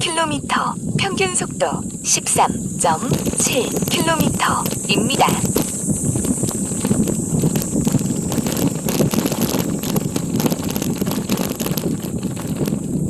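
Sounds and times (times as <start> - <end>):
bicycle tyre noise: 0.0 - 13.0
wind rumbling on microphone: 0.0 - 13.0
bike rattling knocks: 3.0 - 13.0.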